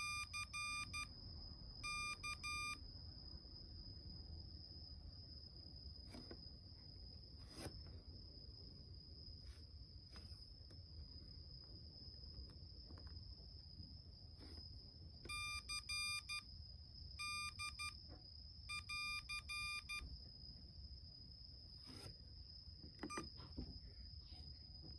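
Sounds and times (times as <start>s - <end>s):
morse code beeps: 0.0s - 1.1s, 1.8s - 2.8s, 15.3s - 16.5s, 17.2s - 18.0s, 18.7s - 20.1s, 23.0s - 23.3s.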